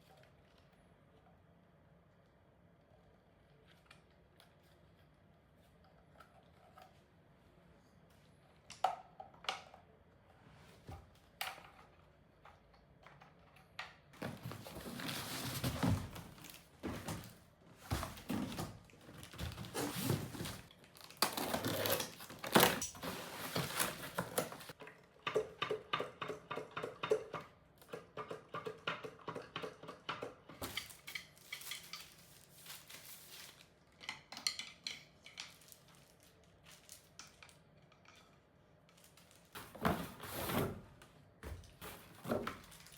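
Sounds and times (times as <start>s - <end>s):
packaging rustling: 14.2s - 24.8s, 30.6s - 33.9s, 35.3s - 37.6s, 41.6s - 42.9s.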